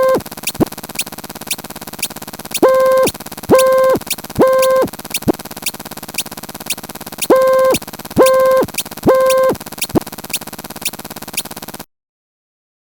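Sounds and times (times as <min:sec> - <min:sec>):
high chirps dropping in pitch: 0:00.0 - 0:00.6, 0:02.6 - 0:05.3, 0:07.2 - 0:10.0
loud buzzy beep: 0:00.0 - 0:00.6, 0:02.5 - 0:05.4, 0:06.7 - 0:10.0
fast electronic clicking: 0:00.0 - 0:11.8.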